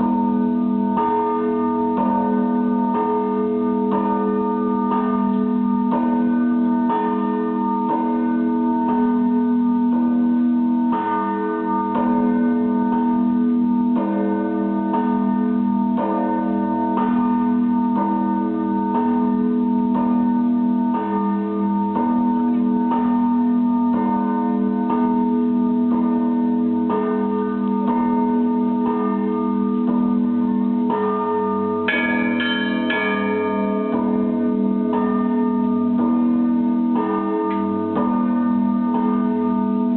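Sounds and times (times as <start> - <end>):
bells ringing in rhythm: 0.0 - 39.9
hum of large bells: 0.0 - 39.9
high bright bells ringing: 20.2 - 39.9.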